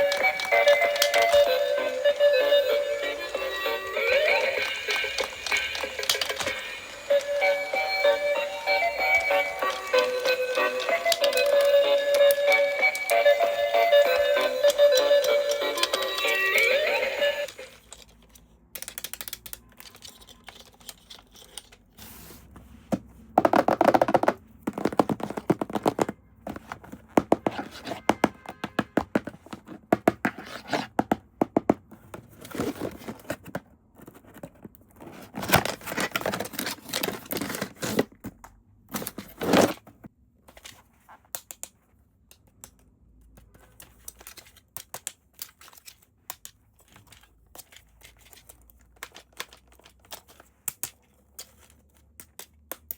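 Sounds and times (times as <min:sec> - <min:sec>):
packaging clicks and knocks: 0:00.0 - 0:01.9, 0:04.0 - 0:08.2, 0:08.8 - 0:13.3, 0:23.4 - 0:39.8
plastic and cardboard crinkling: 0:00.0 - 0:22.5, 0:23.4 - 0:31.1, 0:31.8 - 0:42.1, 0:43.5 - 0:52.5.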